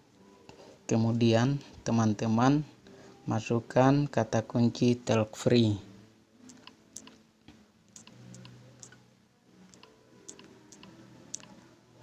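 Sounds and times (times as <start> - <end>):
smartphone keyboard typing clicks: 6.5 - 7.2, 9.7 - 11.5.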